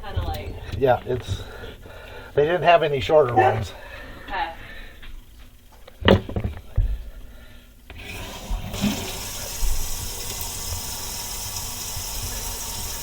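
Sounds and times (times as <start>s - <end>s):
water running: 8.0s - 13.0s.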